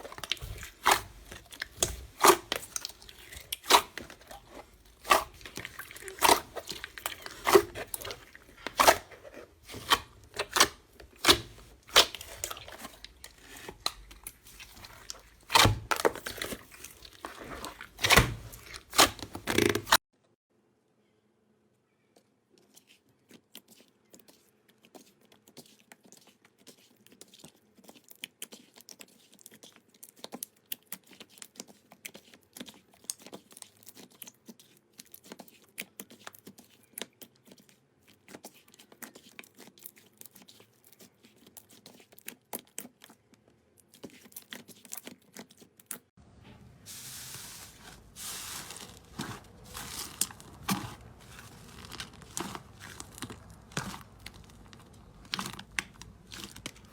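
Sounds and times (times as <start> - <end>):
dense crackling and crinkling: 0.0 - 20.0, 22.6 - 56.9
slime squeezed by hand: 46.9 - 56.9.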